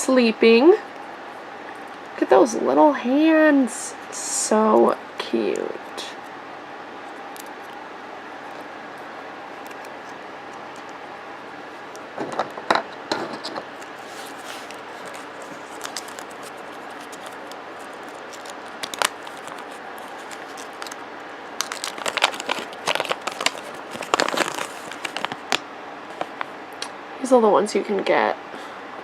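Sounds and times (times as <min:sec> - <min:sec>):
packaging crinkling and rustling: 0:08.4 - 0:11.0, 0:11.8 - 0:26.4.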